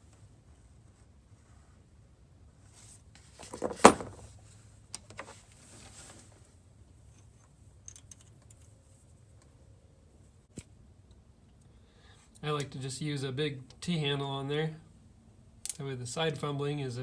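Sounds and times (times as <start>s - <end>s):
soft rustle: 0.0s - 7.5s, 8.5s - 9.6s.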